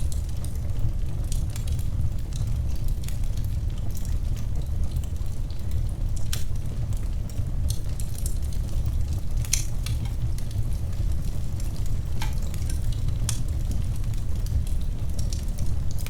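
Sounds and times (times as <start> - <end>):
low rumble of flames: 0.0 - 16.0
wood fire crackling: 0.0 - 16.0
sharp pops of burning wood: 12.2 - 13.7.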